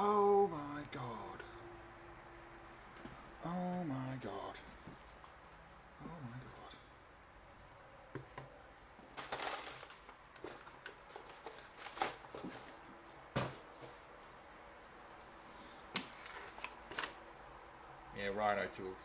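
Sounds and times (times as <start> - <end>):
paper rustling: 9.0 - 14.4, 15.0 - 17.3.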